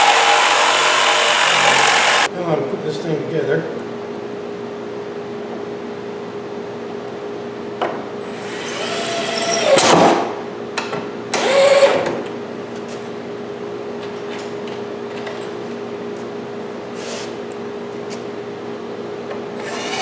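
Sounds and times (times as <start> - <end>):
jigsaw motor whine cutting wood: 0.0 - 2.3, 19.6 - 20.0.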